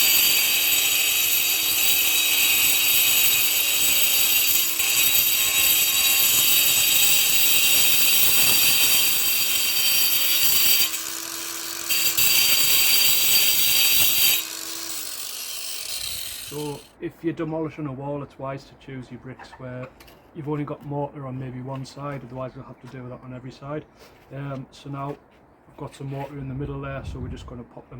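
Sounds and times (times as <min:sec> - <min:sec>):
angle grinder grinding mortar: 0:00.0 - 0:16.9.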